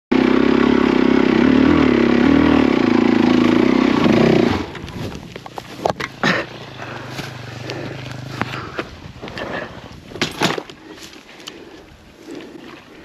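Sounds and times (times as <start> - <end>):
motorcycle engine running: 0.1 - 10.0.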